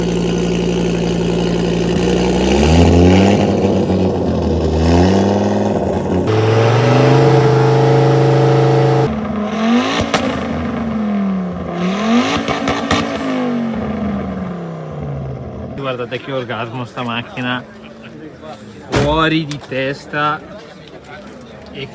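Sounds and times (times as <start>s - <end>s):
exhaust cracks: 0.0s - 15.8s, 18.8s - 19.6s
rally car engine revving: 0.0s - 15.8s.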